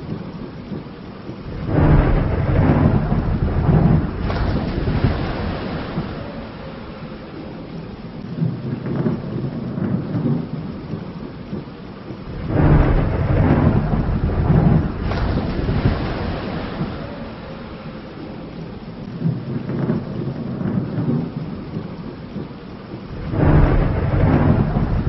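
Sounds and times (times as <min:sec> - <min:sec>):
rolling thunder: 0:00.0 - 0:25.0
steady rain: 0:00.0 - 0:25.0.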